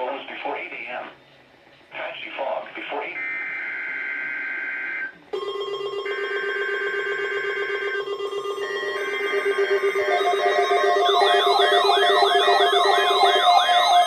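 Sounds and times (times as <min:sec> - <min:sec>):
steady electronic alarm tones: 0:03.2 - 0:14.0
fast warbling siren-like tone: 0:06.1 - 0:14.0
digital header tone bursts: 0:08.4 - 0:14.0.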